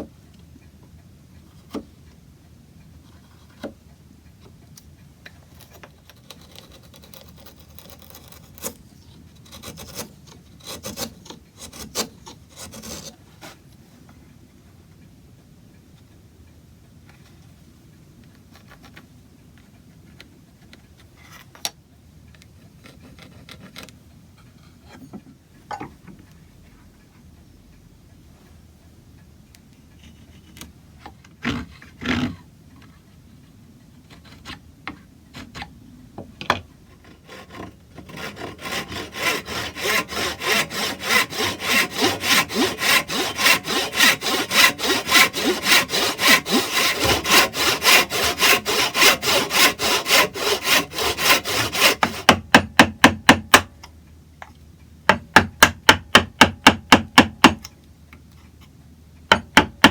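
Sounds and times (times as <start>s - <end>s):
hand saw cutting wood: 6.2s - 8.8s, 9.4s - 13.6s, 37.0s - 53.7s.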